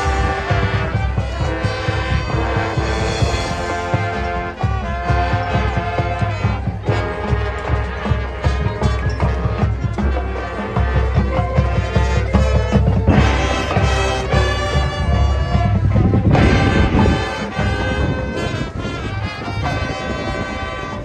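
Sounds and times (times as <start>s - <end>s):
brass melody: 0.0s - 21.0s
drums: 0.0s - 21.0s
marching band playing: 0.0s - 21.0s.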